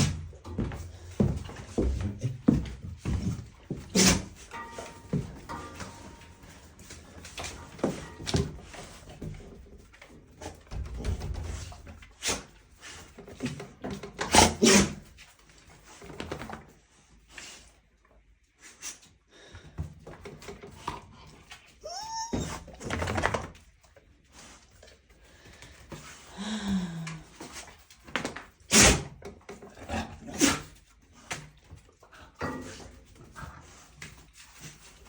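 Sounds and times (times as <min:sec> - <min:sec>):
dog sneezing: 0:03.9 - 0:04.3, 0:14.3 - 0:15.0, 0:28.7 - 0:29.1, 0:30.3 - 0:30.7
dog whining: 0:21.8 - 0:22.8.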